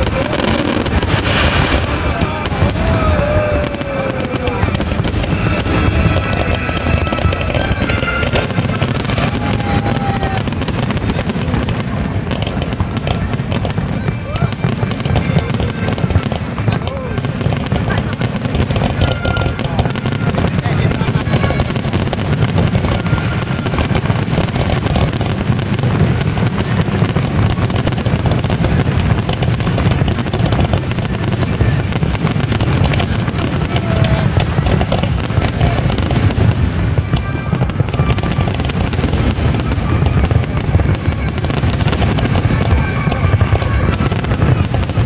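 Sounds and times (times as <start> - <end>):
low rumble: 0.0 - 10.4
fireworks bangs and crackles: 0.0 - 45.0.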